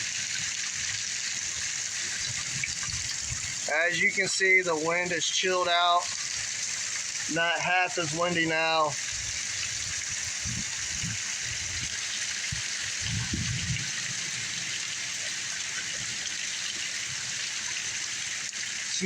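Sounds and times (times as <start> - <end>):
heavy rain hissing: 0.0 - 19.0.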